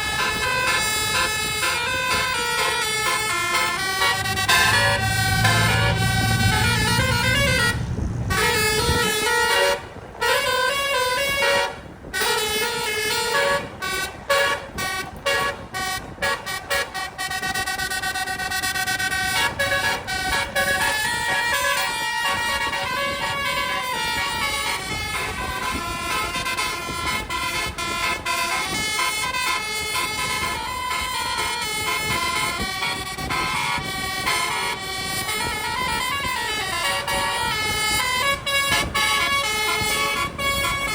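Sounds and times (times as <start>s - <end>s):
bus air horn playing a tune: 0.0s - 40.9s
low rumble: 1.9s - 9.1s.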